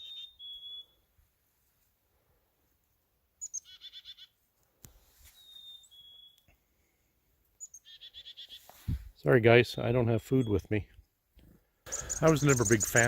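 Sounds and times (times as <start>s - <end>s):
buzzy songbird notes: 11.9s - 13.0s.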